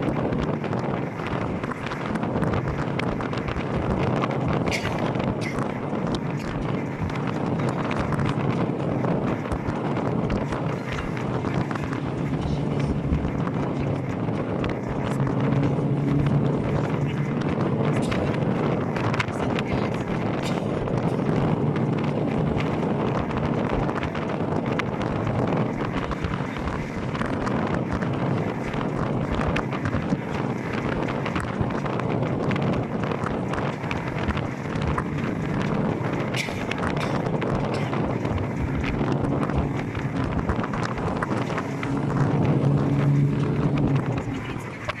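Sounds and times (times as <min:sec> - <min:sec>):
vehicle rumble on road: 0:00.0 - 0:45.0
wind noise on microphone: 0:00.0 - 0:45.0.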